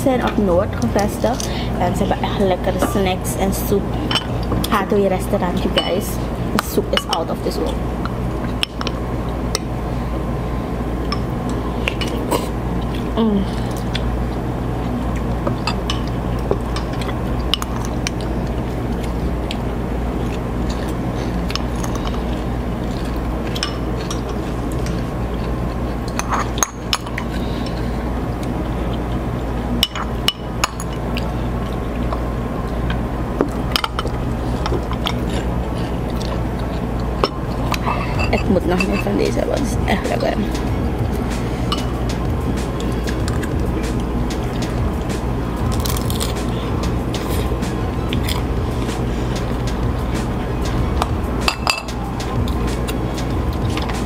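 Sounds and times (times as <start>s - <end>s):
steady low hum: 0.0s - 54.0s
spoons clinking against bowls: 2.8s - 3.4s, 5.6s - 7.8s, 23.5s - 25.0s, 26.1s - 27.4s, 37.2s - 39.4s, 41.7s - 42.1s, 51.4s - 53.0s.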